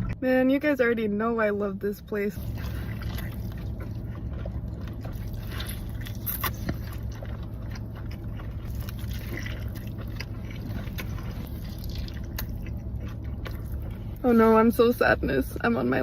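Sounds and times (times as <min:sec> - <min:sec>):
low hum: 0:00.0 - 0:16.0
person chewing food: 0:02.4 - 0:14.3.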